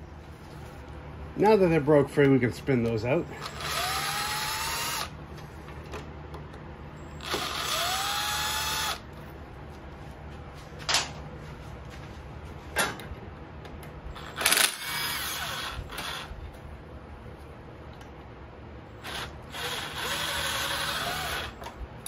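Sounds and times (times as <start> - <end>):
cordless drill whining: 3.4 - 5.1, 7.1 - 9.0, 14.2 - 16.3, 19.0 - 21.8.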